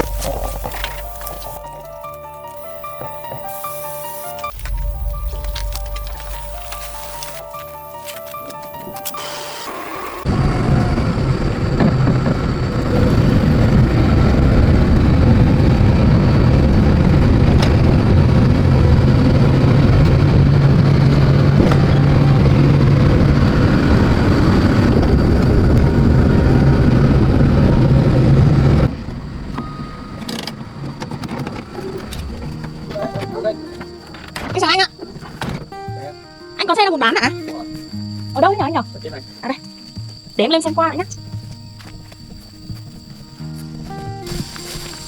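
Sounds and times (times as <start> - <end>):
car engine running: 0.0 - 35.8.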